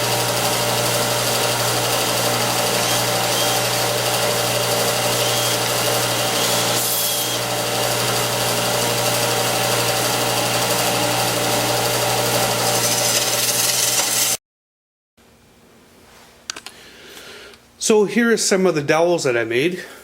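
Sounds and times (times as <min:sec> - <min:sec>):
machine hum: 0:00.0 - 0:14.3.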